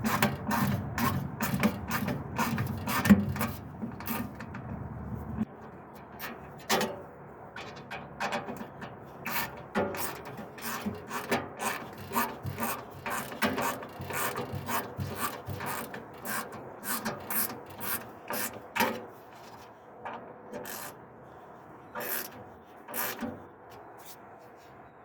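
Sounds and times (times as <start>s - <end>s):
hand ratchet clicking: 0.0s - 4.4s, 9.3s - 18.9s, 20.6s - 21.0s, 22.0s - 23.3s
screw rasping into wood: 0.0s - 4.4s, 9.3s - 18.7s, 20.6s - 21.0s, 22.0s - 23.3s.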